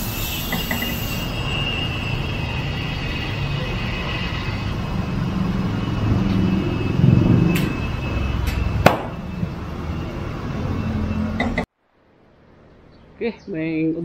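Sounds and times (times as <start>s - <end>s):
low vehicle rumble: 1.0s - 13.3s.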